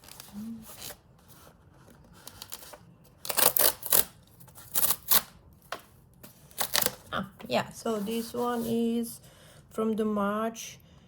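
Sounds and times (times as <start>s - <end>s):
scratchy paper and cardboard strokes: 7.8s - 9.1s.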